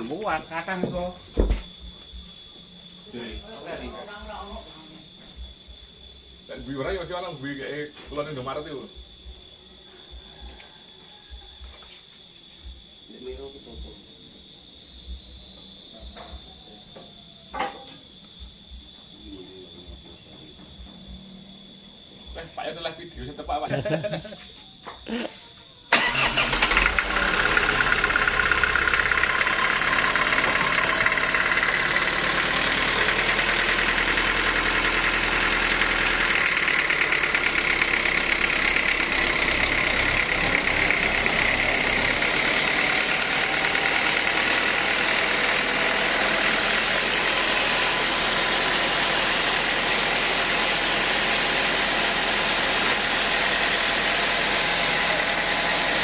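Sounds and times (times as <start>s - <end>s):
sawmill machinery droning: 25.9s - 56.0s.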